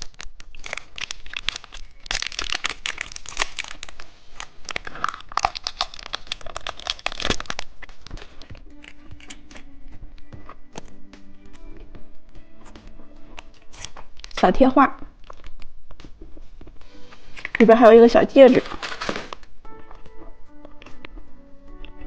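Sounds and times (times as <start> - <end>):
candy wrapper crinkling and tearing: 0.0 - 10.0, 13.4 - 14.4, 15.0 - 16.0, 17.3 - 17.6, 18.5 - 19.6
soft background music: 5.9 - 22.0.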